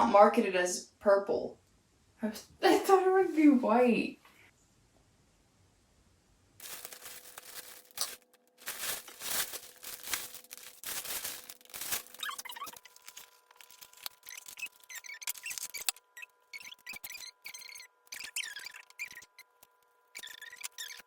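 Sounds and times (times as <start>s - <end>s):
packaging rustling and tearing: 6.6s - 19.2s
packing material squeaks: 6.6s - 21.0s.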